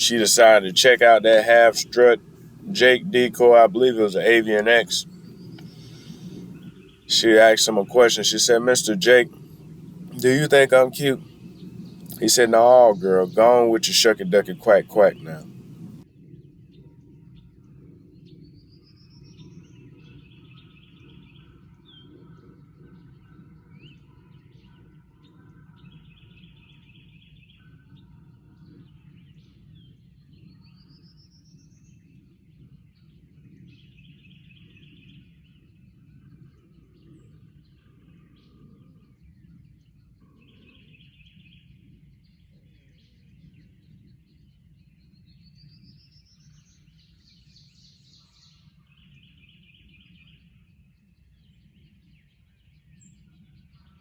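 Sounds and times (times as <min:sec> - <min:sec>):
small bird singing: 0:00.0 - 0:16.0, 0:33.5 - 0:54.0
low outdoor background noise: 0:00.0 - 0:54.0.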